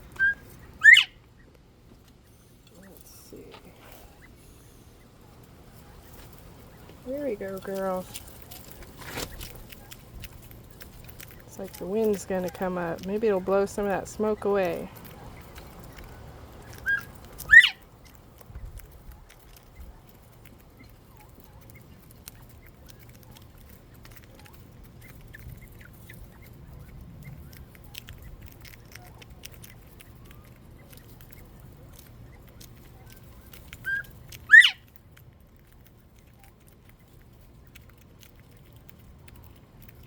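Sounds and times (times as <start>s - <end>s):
faint low rumble: 0.0s - 40.0s
quail whistled call: 0.1s - 1.2s, 16.8s - 17.8s, 33.8s - 34.8s.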